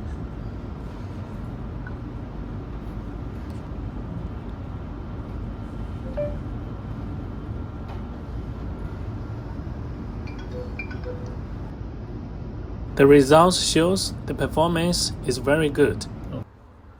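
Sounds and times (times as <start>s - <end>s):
short faint tone: 6.0s - 6.7s.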